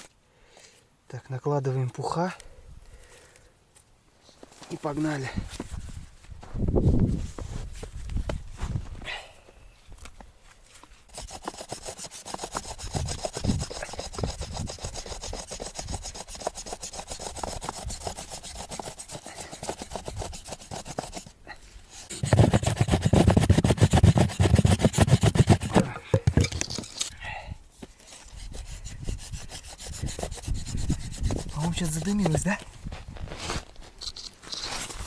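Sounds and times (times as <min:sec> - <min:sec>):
bow drill rasping on wood: 0:11.1 - 0:21.3, 0:21.9 - 0:27.1, 0:28.0 - 0:32.5.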